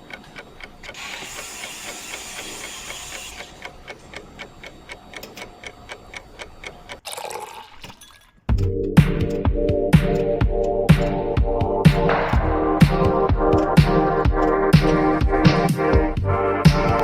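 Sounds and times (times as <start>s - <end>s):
rapid mechanical ticking: 0.0s - 7.0s, 8.5s - 17.0s
hiss: 0.9s - 3.7s.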